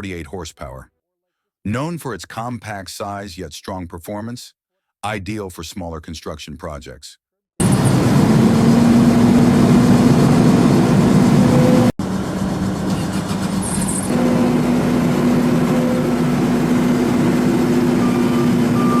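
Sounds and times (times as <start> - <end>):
diesel engine droning: 7.6 - 19.0.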